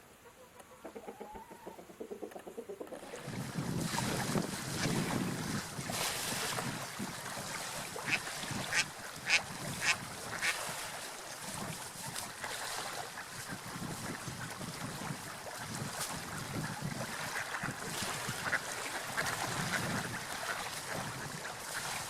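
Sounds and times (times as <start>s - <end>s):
ducks quacking: 8.0s - 10.7s, 16.2s - 22.0s.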